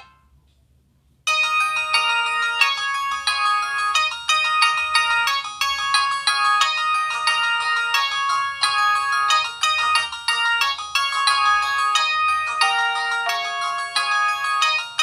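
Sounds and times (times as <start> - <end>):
cell phone electronic ringtone: 12.4 - 15.0.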